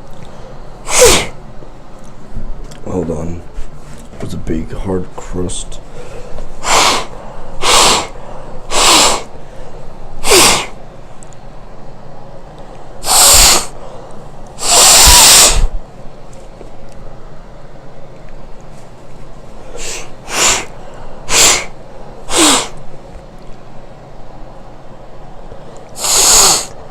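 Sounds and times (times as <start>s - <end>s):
person blowing nose forcefully: 0.8s - 1.4s, 6.6s - 9.3s, 10.2s - 10.8s, 13.0s - 13.8s, 14.6s - 15.8s, 19.7s - 22.8s, 26.0s - 26.8s.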